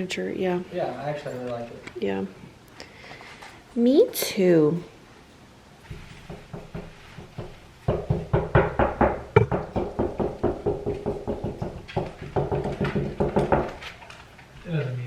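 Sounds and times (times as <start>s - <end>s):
hammer tapping a nail: 6.3s - 13.7s.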